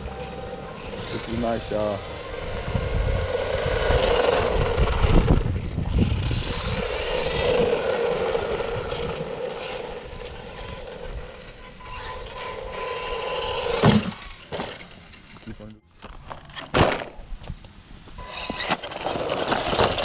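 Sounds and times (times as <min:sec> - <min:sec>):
electric motor whining: 0:00.0 - 0:15.2
tyre and ground noise: 0:00.0 - 0:20.0.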